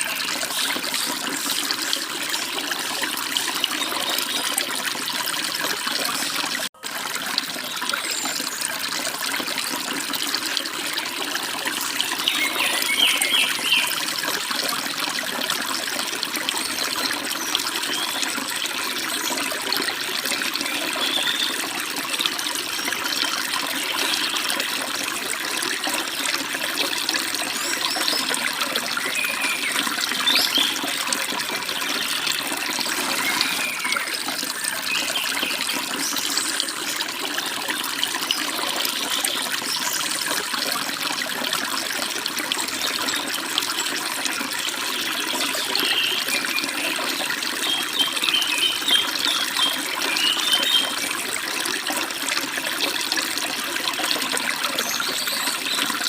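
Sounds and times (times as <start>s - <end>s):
stream babbling over rocks: 0.0s - 56.0s
bird chirps: 12.3s - 13.9s.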